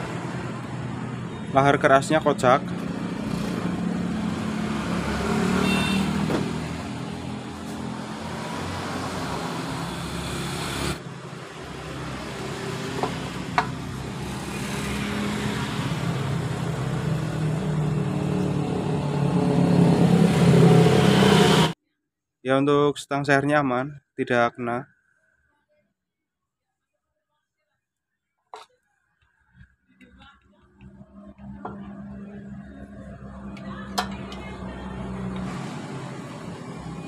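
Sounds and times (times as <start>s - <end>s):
vehicle engine humming: 0.0s - 21.8s, 29.5s - 37.0s.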